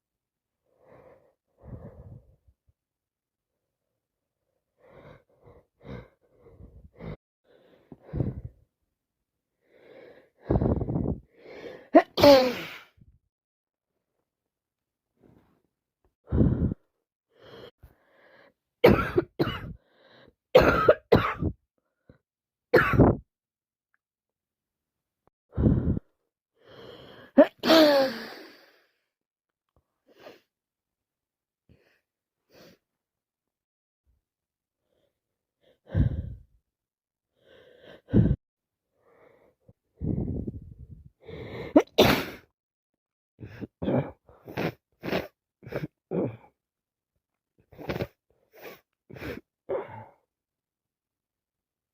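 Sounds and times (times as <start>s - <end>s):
person coughing harshly: 12.0s - 12.8s, 18.8s - 19.8s, 20.6s - 21.6s, 22.8s - 23.2s, 27.4s - 28.2s, 41.7s - 42.4s.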